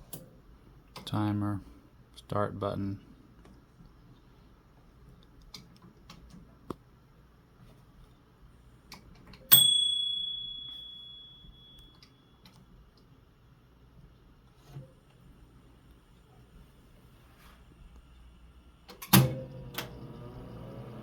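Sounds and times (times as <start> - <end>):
microwave timer bell ding: 9.5 - 12.3
microwave control clicks: 18.9 - 21.0.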